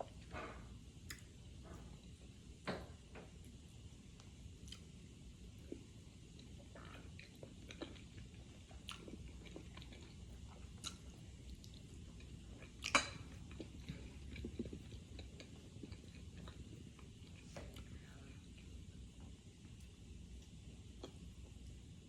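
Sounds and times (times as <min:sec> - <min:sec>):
person chewing with wet mouth sounds: 0:04.2 - 0:21.8.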